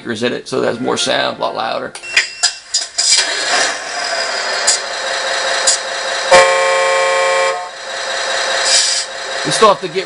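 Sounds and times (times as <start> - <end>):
simulated diesel engine from speaker: 3.1 - 10.0
simulated horn: 6.3 - 7.7.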